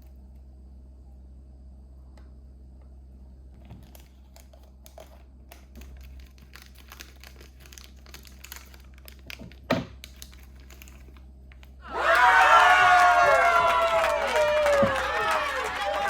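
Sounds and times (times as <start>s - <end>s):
plastic packaging clicks and crinkles: 3.6s - 11.8s.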